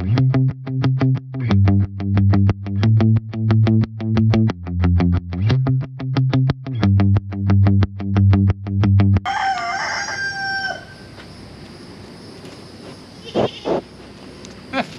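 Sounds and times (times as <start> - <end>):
distorted electric guitar music: 0.0 - 9.3
rooster crowing: 9.2 - 11.2.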